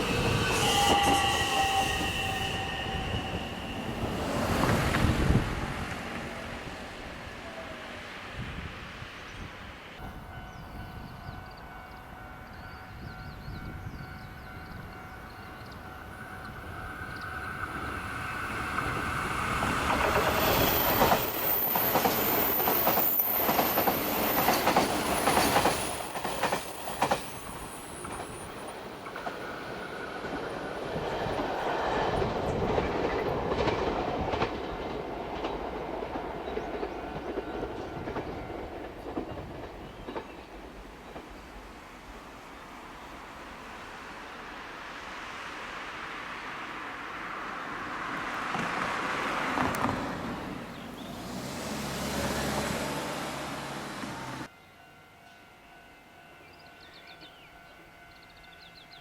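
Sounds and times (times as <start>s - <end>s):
high wheel squeal: 0.0s - 5.4s
train wheels clicking over joints: 18.5s - 41.5s.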